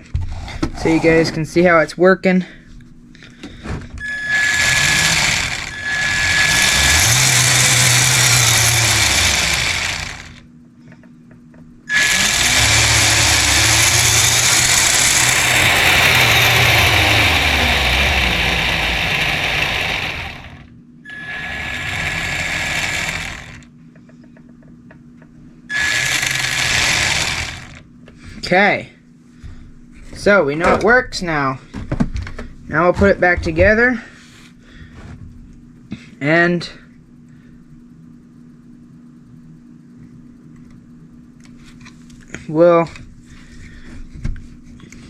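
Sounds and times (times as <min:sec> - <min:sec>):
rc truck electric motor: 0:04.0 - 0:10.4, 0:11.9 - 0:23.7, 0:25.7 - 0:27.8.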